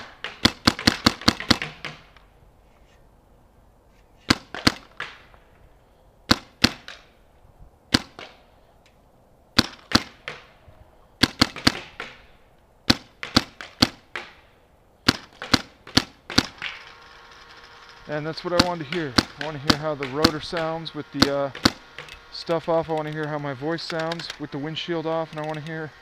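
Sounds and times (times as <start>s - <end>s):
paintball marker firing pops: 0.0s - 2.3s, 4.3s - 5.4s, 6.3s - 7.1s, 7.9s - 8.4s, 9.6s - 10.5s, 11.2s - 12.3s, 12.9s - 14.4s, 15.0s - 16.8s, 18.6s - 22.2s.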